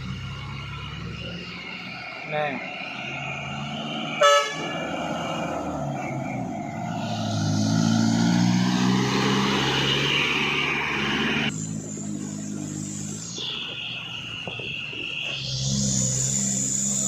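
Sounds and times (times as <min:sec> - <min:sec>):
diesel truck engine labouring: 0:00.0 - 0:17.0
truck horn toot: 0:04.1 - 0:04.9.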